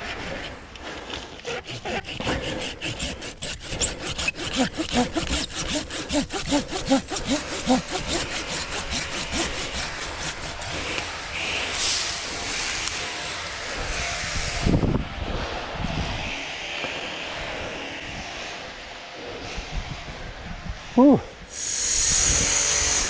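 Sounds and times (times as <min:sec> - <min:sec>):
hand saw cutting wood: 0:00.0 - 0:14.8, 0:21.6 - 0:23.0.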